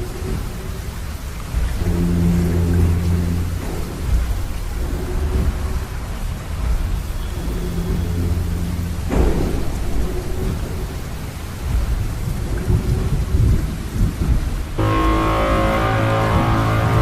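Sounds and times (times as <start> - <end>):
rolling thunder: 0.0 - 17.0
steady rain: 0.0 - 17.0
music: 1.6 - 5.9, 14.8 - 17.0
sharp thunderclap: 3.5 - 17.0.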